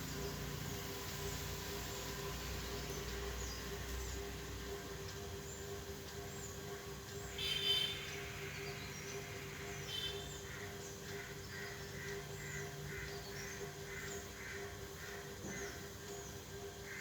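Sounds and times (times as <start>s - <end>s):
steady low hum: 0.0s - 17.0s
birds chirping and calling: 7.2s - 17.0s.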